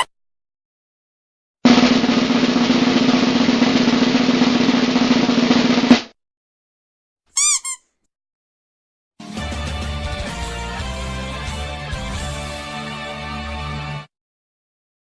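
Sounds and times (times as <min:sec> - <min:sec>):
snare drum roll: 0:01.7 - 0:06.1.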